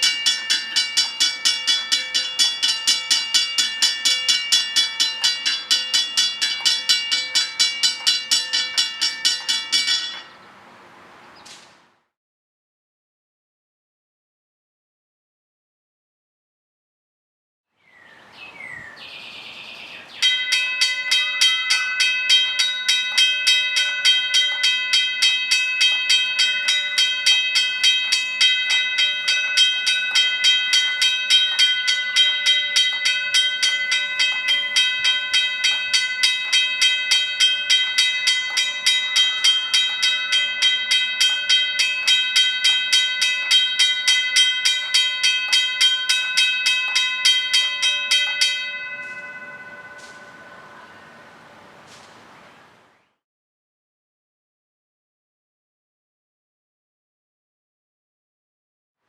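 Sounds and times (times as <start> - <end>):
railroad crossing bell ringing: 0.0 - 10.5, 20.1 - 52.1.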